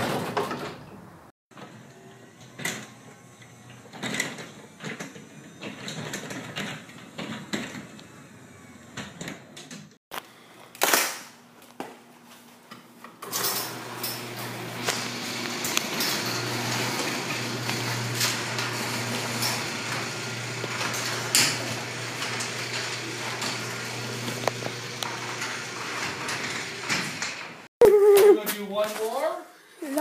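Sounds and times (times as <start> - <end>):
garage door opener running: 1.6 - 10.0, 13.2 - 27.7.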